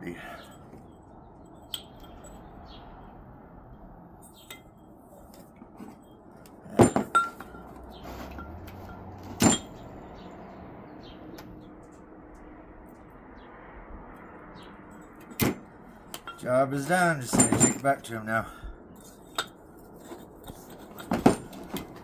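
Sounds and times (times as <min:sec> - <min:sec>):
metal knocks and clinks: 0:04.3 - 0:10.2, 0:14.9 - 0:18.0, 0:19.0 - 0:22.0
short metallic ring: 0:06.8 - 0:07.7, 0:08.3 - 0:10.2.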